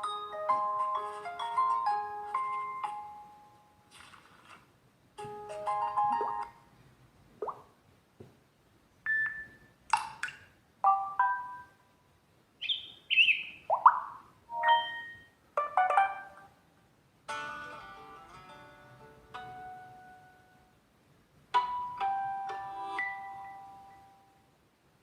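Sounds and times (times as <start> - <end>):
phone notification tones: 5.8 - 6.5, 10.8 - 11.7, 14.5 - 16.4
melodic phone tone: 14.5 - 16.3.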